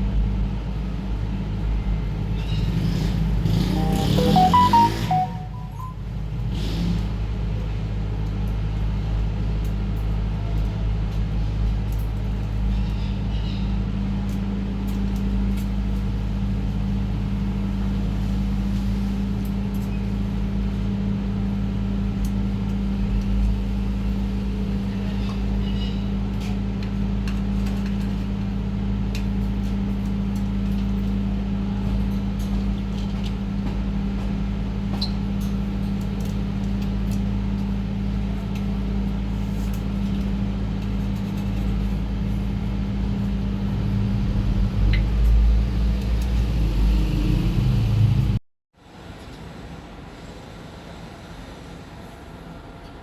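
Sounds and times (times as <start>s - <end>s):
faint high chirps: 3.8s - 6.0s.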